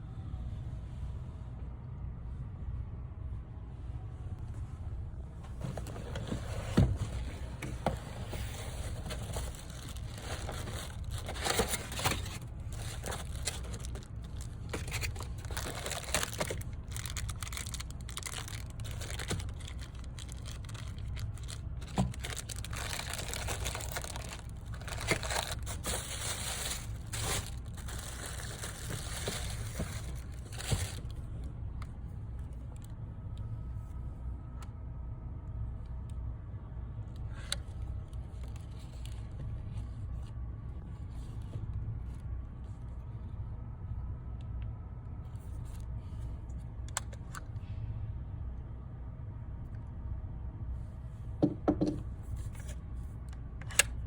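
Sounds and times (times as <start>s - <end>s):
steady low rumble: 0.0s - 51.4s
handling rustling and scraping: 5.4s - 31.3s, 37.4s - 43.3s, 52.2s - 53.0s.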